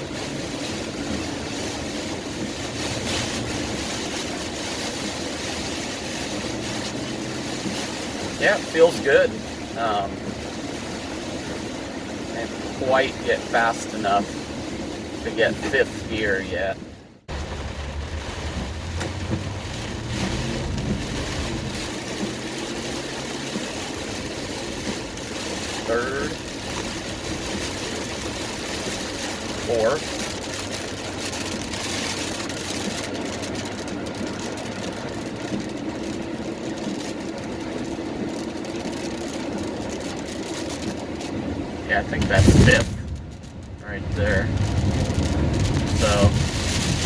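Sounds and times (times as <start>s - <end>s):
car engine: 0.0s - 47.0s
rain: 0.0s - 47.0s
tyre noise on wet road: 0.0s - 47.0s.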